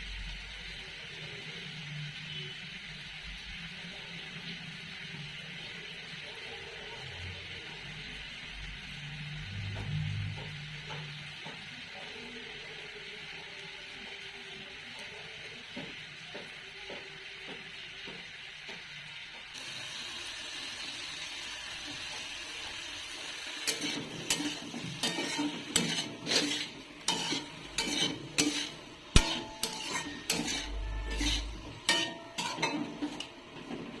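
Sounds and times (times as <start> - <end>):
vegetables sizzling in a pan: 0.0 - 34.0
utensil scraping and knocking pan: 23.7 - 34.0.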